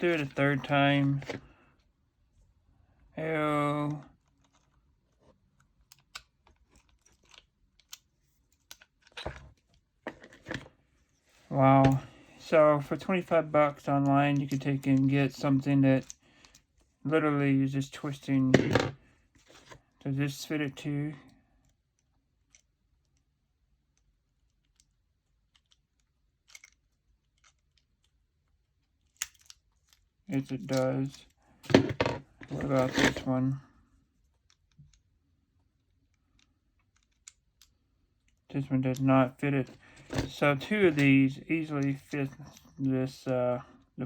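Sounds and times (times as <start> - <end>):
small metal parts clicking: 5.6 - 9.7, 23.9 - 28.2, 36.0 - 38.4.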